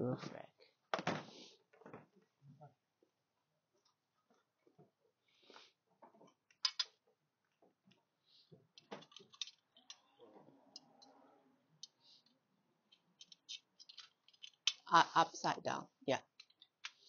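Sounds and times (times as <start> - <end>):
small metal parts clicking: 6.6 - 6.9, 8.8 - 11.2, 12.9 - 14.9, 16.3 - 17.0.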